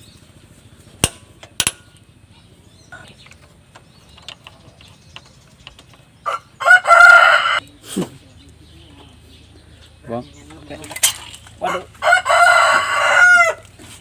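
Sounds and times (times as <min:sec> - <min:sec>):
tools knocking on engine parts: 0:03.0 - 0:06.2.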